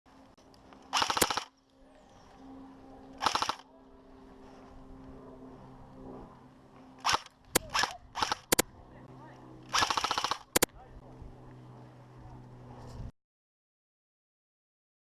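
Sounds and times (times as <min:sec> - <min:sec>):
airsoft gun bursts: 0:00.9 - 0:01.5, 0:03.2 - 0:03.6, 0:07.0 - 0:08.7, 0:09.7 - 0:10.7.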